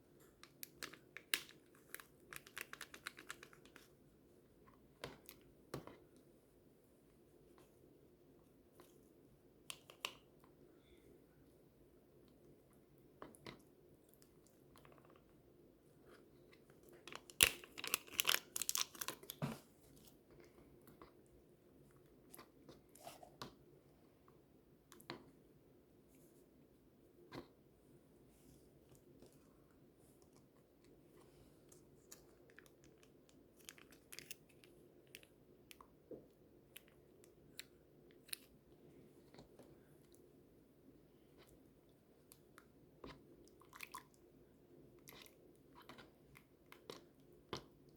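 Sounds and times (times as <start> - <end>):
soft eating crunches and clicks: 0.1 - 4.0, 16.0 - 23.6, 28.9 - 40.3, 41.2 - 44.3, 44.9 - 47.9.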